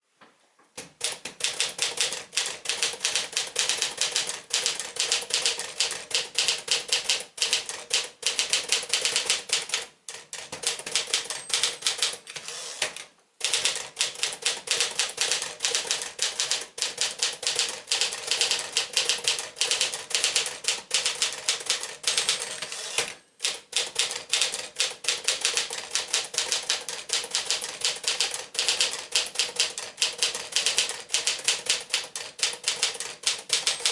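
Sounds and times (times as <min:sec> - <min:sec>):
manual typewriter typing: 0:00.8 - 0:33.9.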